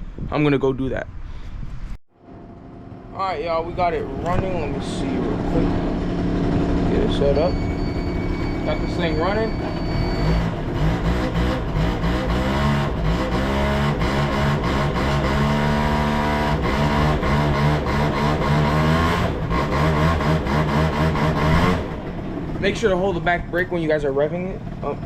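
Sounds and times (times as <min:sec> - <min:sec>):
scooter engine revving: 0:02.3 - 0:25.0.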